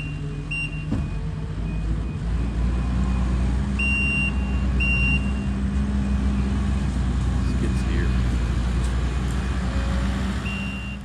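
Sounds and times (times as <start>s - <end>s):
backup alarm beeping: 0.0s - 2.6s, 3.8s - 5.6s, 10.4s - 11.0s
heavy vehicle engine running: 0.0s - 11.0s.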